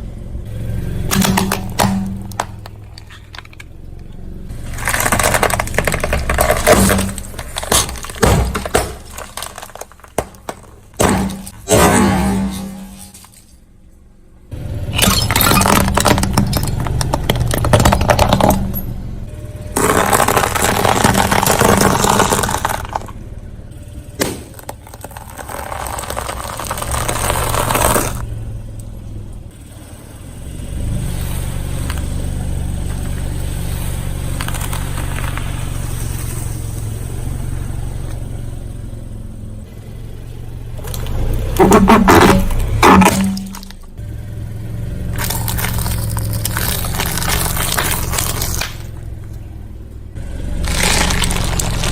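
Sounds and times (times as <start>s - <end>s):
car engine running: 0.0s - 51.9s
tyres crushing objects: 1.1s - 13.5s, 14.9s - 18.9s, 19.7s - 23.2s, 24.2s - 28.2s, 40.8s - 44.0s, 45.1s - 49.5s, 50.6s - 51.9s
crunching and scraping: 1.1s - 14.1s, 14.9s - 23.3s, 24.0s - 28.3s, 31.2s - 36.8s, 40.7s - 44.0s, 45.1s - 51.9s.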